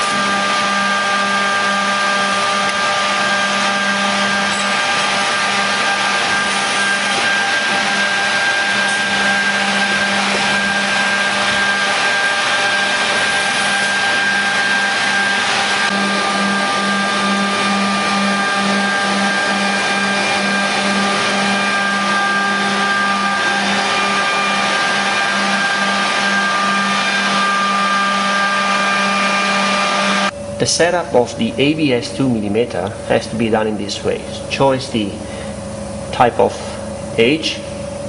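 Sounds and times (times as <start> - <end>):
high machine tones: 0.0 - 36.1
machine whirring: 0.0 - 38.0.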